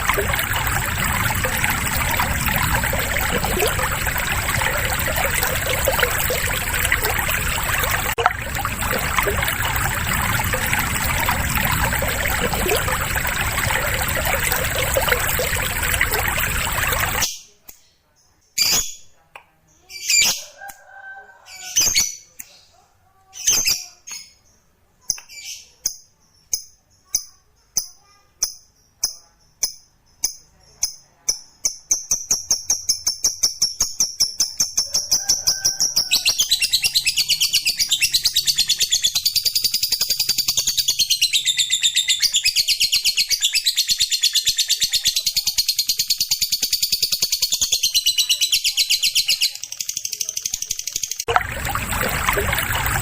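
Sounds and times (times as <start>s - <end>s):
rushing water: 0.0s - 17.3s, 51.3s - 53.0s.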